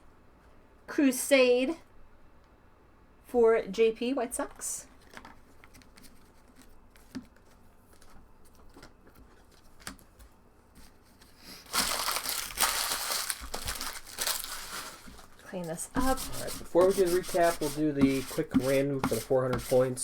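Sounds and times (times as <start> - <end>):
wrappers crinkling: 10.9 - 16.9.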